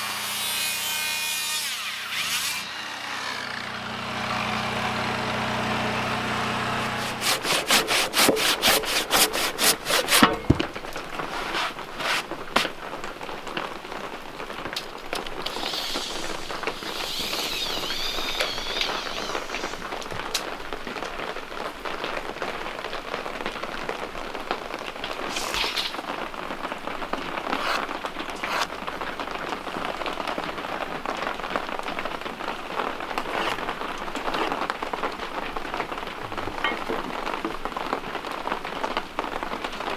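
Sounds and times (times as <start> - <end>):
sharp scraping strokes: 6.5 - 12.8, 15.4 - 20.0, 25.2 - 26.1, 27.4 - 28.7, 33.2 - 34.6
rain falling on a surface: 20.0 - 27.1, 28.8 - 33.1, 33.9 - 39.9.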